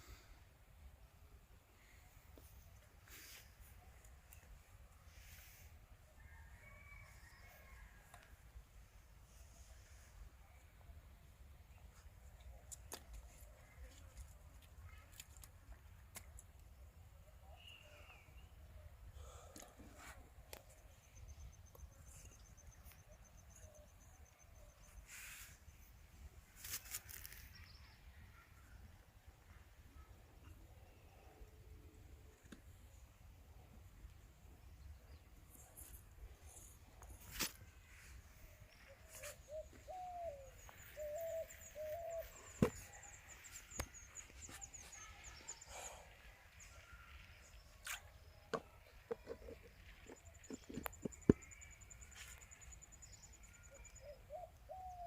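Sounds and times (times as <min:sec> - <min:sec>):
rustling noises: 0:26.5 - 0:27.7
faint high chirping: 0:34.7 - 0:55.0
bird low calls: 0:38.7 - 0:47.2.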